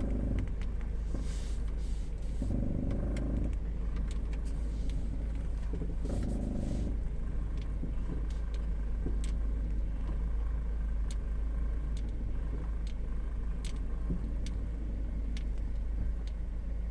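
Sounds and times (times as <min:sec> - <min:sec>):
car engine rumbling: 0:00.0 - 0:16.9.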